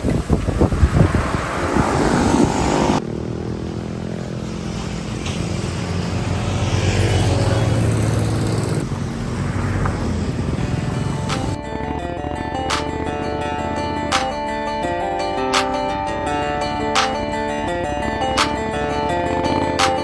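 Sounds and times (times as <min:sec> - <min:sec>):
buffeting noise: 0:00.0 - 0:20.0
motorcycle engine running: 0:05.8 - 0:15.0, 0:16.1 - 0:20.0.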